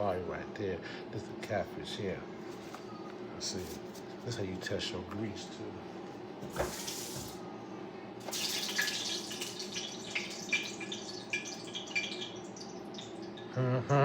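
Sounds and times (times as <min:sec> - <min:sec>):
hot grease sizzling and popping: 0:08.2 - 0:13.5.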